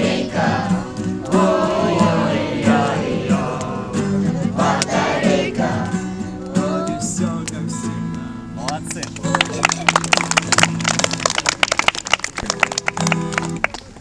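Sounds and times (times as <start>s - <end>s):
group of voices singing: 0.0s - 7.4s
strummed acoustic guitar: 0.0s - 11.2s, 12.4s - 13.6s.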